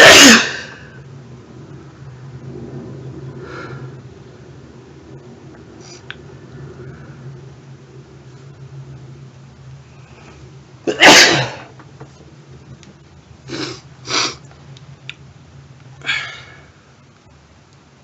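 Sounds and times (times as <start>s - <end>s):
man sneezing: 0.0s - 0.8s.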